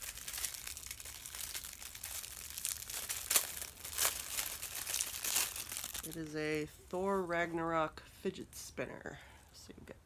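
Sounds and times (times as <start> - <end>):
packaging crinkling: 0.0 - 6.4.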